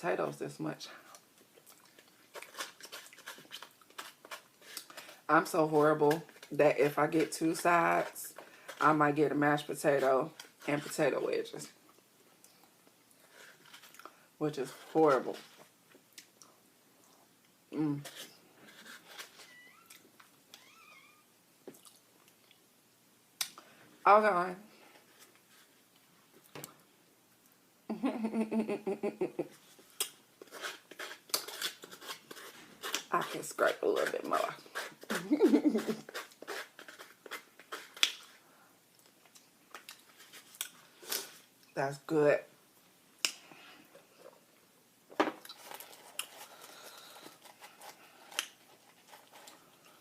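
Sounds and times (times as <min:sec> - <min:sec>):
crackly chewing: 0:01.1 - 0:05.3, 0:11.8 - 0:14.2, 0:21.6 - 0:22.7, 0:29.6 - 0:41.7, 0:45.4 - 0:50.0
woman humming or giggling: 0:27.9 - 0:29.5, 0:35.2 - 0:36.0.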